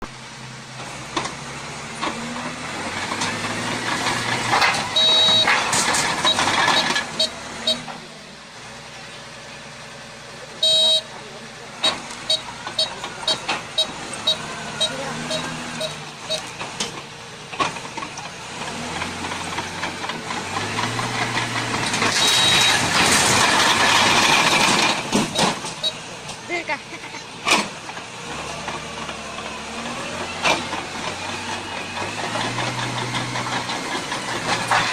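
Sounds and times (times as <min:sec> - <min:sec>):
heavy equipment engine running: 0:00.0 - 0:34.9.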